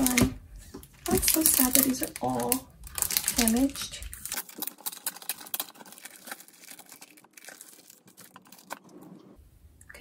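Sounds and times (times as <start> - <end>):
crinkly packaging torn open: 0.0 - 8.9.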